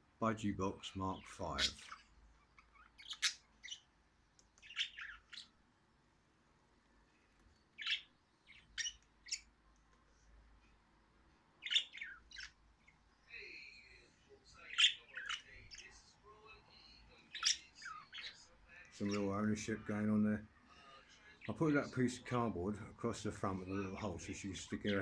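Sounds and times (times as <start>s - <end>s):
budgerigars chirping and squawking: 1.0s - 3.9s, 4.5s - 5.6s, 7.7s - 9.6s, 11.6s - 16.1s, 16.8s - 20.2s, 23.2s - 25.0s.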